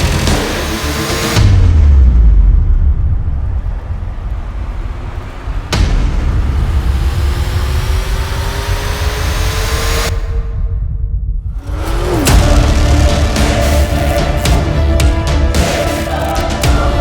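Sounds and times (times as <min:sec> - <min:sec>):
deep rumble: 0:00.0 - 0:17.0
rising drone tones: 0:00.0 - 0:17.0
sudden crash: 0:00.0 - 0:17.0.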